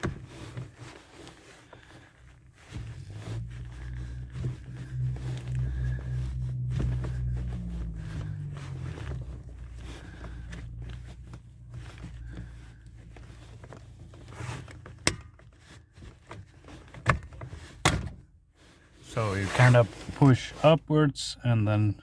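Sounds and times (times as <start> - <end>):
low hum: 2.8 - 13.2.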